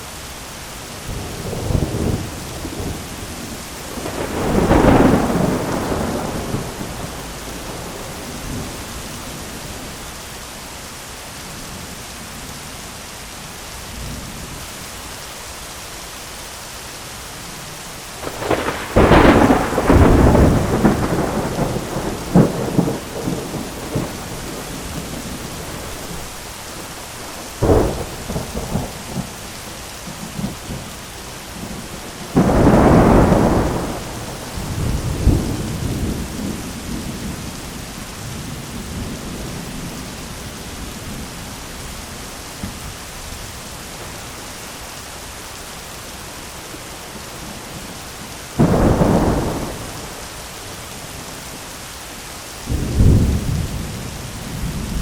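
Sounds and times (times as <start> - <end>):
rain on an umbrella: 0.0 - 55.0
thunder crashes: 4.0 - 8.8, 18.2 - 26.2, 32.3 - 37.1.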